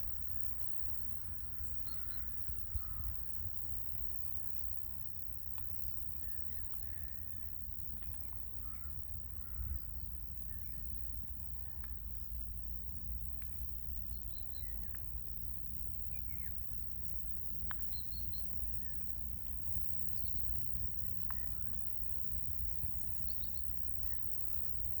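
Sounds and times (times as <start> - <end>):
low outdoor rumble: 0.0 - 25.0
small birds chirping: 13.5 - 15.1, 16.1 - 16.7.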